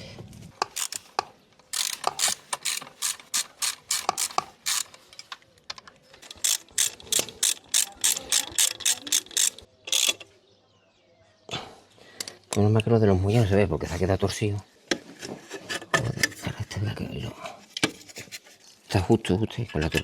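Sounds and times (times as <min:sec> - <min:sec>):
ratchet wrench clicking: 0:00.6 - 0:01.1, 0:01.7 - 0:05.0, 0:06.3 - 0:10.2.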